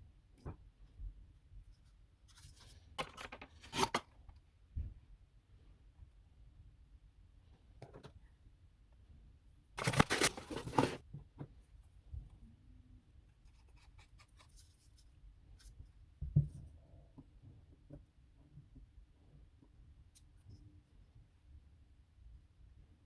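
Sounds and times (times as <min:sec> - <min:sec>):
packaging rustling and tearing: 0:09.8 - 0:11.0.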